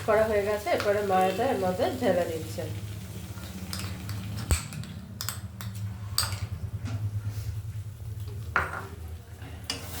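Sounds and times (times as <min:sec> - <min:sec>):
steady low hum: 0:02.8 - 0:09.7.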